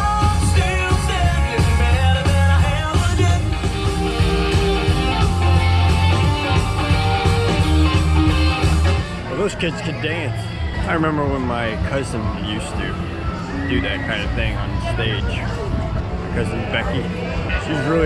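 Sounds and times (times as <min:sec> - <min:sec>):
person singing rock song: 0:00.0 - 0:09.0
heavy bass line: 0:00.0 - 0:17.8.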